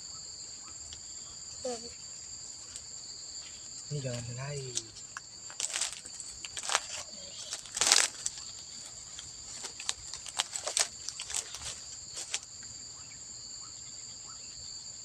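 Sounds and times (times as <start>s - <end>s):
crickets chirring: 0.0s - 15.0s
rustles and clicks: 3.5s - 12.5s.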